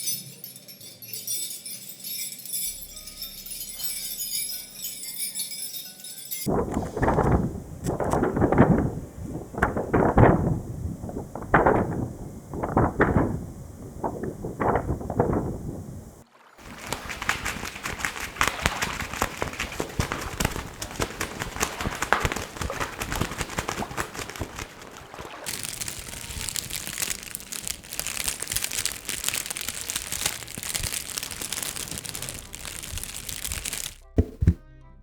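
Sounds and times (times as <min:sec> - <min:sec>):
material crinkling and crumpling: 0:06.4 - 0:15.8, 0:16.6 - 0:34.2.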